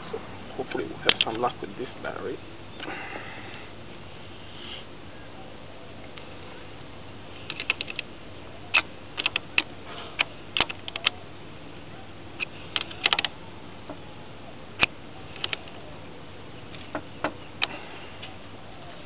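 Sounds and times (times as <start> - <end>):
sharp clicks: 1.0 - 1.4, 7.4 - 8.1, 8.7 - 11.2, 12.4 - 14.0, 14.8 - 15.8.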